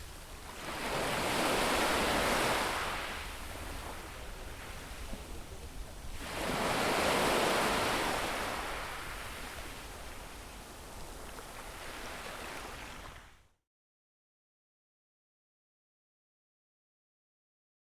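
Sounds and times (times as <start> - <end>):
sea waves breaking on shore: 0.0 - 13.4.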